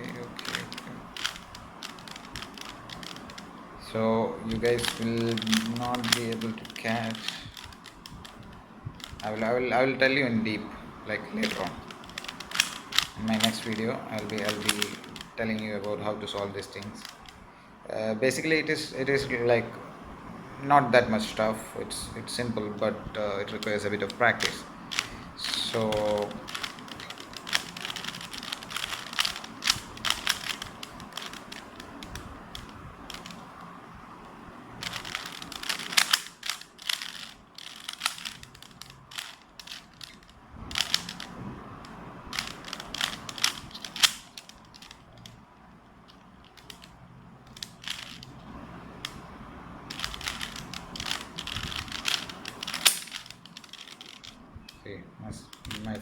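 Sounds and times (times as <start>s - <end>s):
rubik's cube clicking and rattling: 0.0s - 3.7s, 4.5s - 9.6s, 11.3s - 17.4s, 23.3s - 54.8s, 55.5s - 56.0s.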